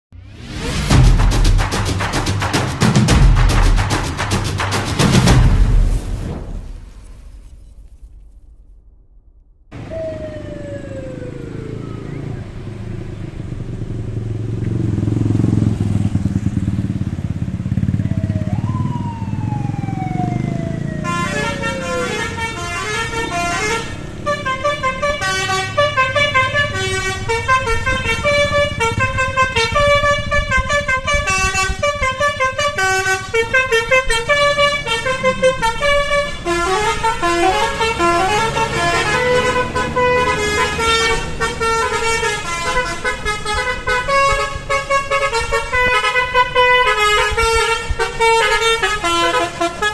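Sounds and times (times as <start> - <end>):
downward sliding tone: 9.7 - 13.0
bus engine rumbling: 18.5 - 49.9
musical bus horn tune: 21.0 - 49.9.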